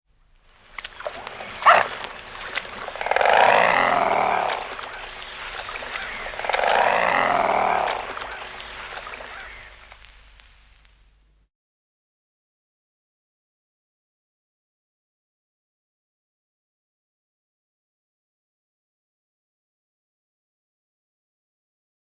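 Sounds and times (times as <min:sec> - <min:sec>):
small crackles: 0:00.2 - 0:11.5
swan growling: 0:01.0 - 0:09.8.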